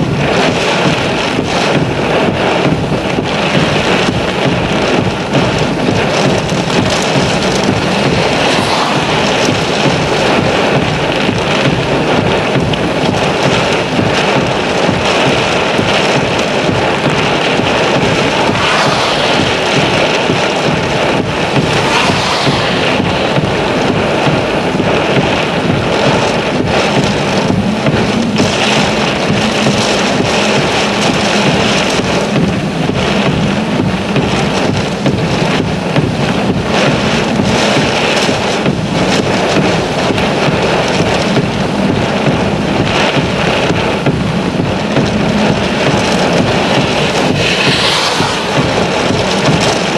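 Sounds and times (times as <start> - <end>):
heavy rain: 0.0 - 49.9
wind: 0.0 - 49.9.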